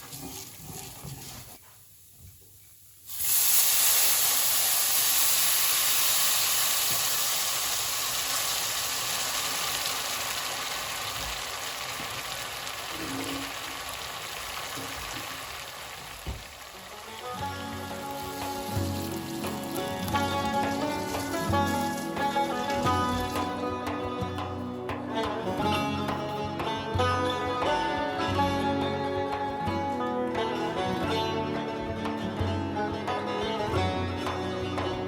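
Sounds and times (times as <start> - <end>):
food sizzling in a hot pan: 2.9 - 24.0.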